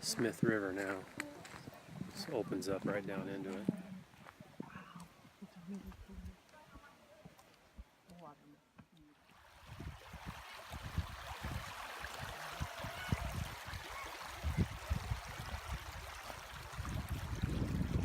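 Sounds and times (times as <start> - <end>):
river water rushing: 9.2 - 18.0.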